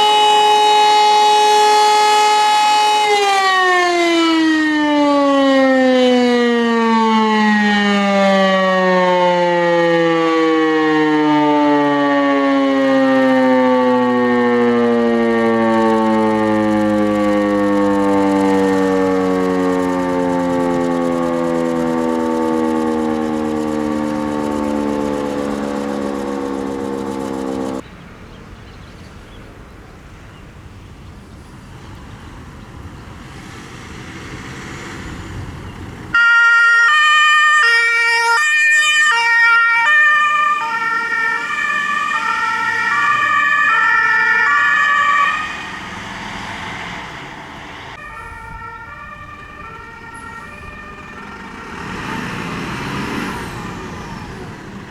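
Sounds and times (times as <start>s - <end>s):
alarm siren winding down: 0.0s - 27.8s, 36.1s - 54.9s
fire engine two-tone horn: 0.0s - 27.8s, 36.1s - 46.6s, 48.0s - 54.9s
background noise: 27.2s - 36.2s.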